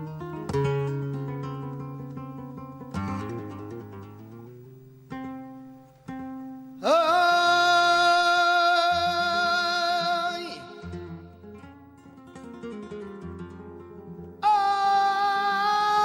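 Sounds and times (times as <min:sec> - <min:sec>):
flamenco guitar plucking: 0:00.0 - 0:16.0
man singing held note: 0:06.8 - 0:11.3, 0:14.4 - 0:16.0.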